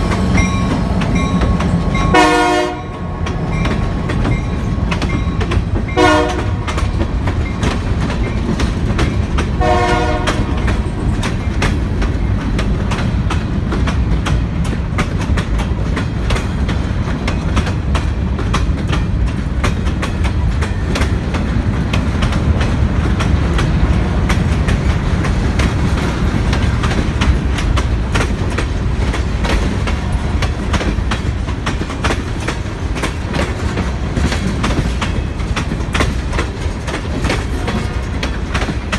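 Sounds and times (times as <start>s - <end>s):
rumble of passing train: 0.0s - 38.9s
wheels clicking over rail joints: 0.0s - 38.9s
train horn blasts: 2.0s - 3.3s, 6.0s - 6.8s, 9.6s - 10.8s.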